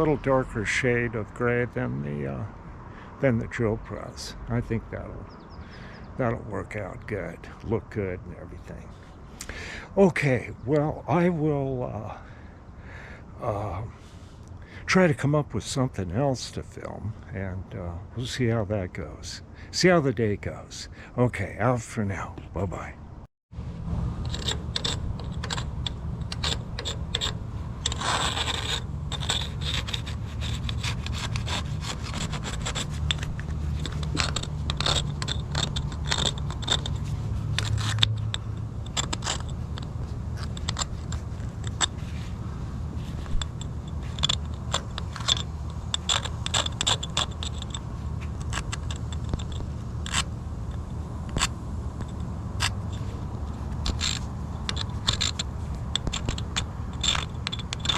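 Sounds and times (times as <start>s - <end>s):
steady low hum: 0.0s - 57.9s
scraping on hard surface: 24.2s - 57.9s
sharp clicks and scratches: 24.2s - 57.9s.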